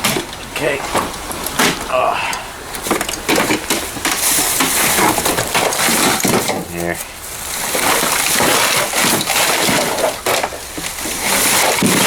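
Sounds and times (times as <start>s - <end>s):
plastic junk rustling and clattering: 0.0s - 12.0s.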